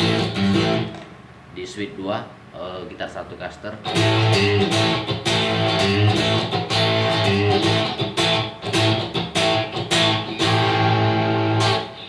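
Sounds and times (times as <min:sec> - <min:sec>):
overdriven electric guitar chords: 0:00.0 - 0:01.2, 0:03.8 - 0:12.0.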